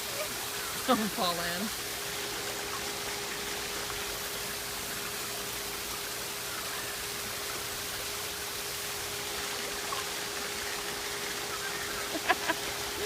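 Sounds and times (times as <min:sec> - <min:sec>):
running water rushing: 0:00.0 - 0:13.0.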